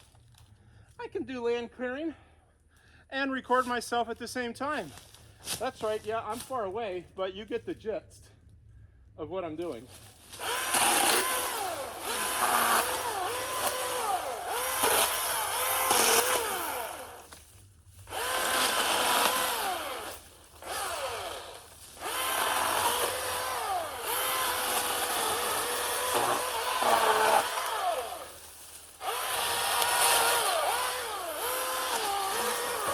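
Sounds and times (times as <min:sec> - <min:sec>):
electric chainsaw cutting: 0:10.3 - 0:17.4, 0:18.1 - 0:32.9.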